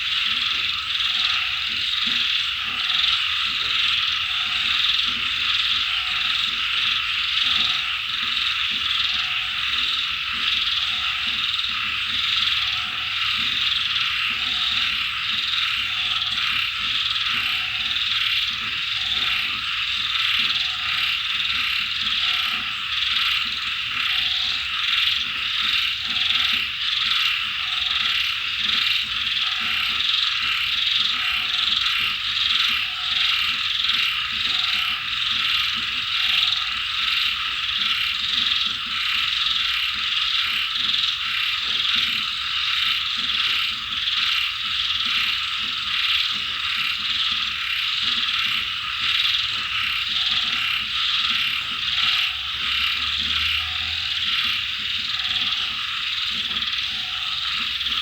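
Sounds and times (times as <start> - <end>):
chorus of frogs croaking: 0.0 - 58.0
high pulsing insect call: 0.0 - 58.0.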